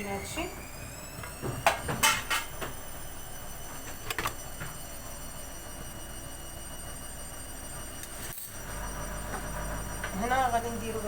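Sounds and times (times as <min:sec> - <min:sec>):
kitchen items clicking and knocking: 0:01.6 - 0:02.6.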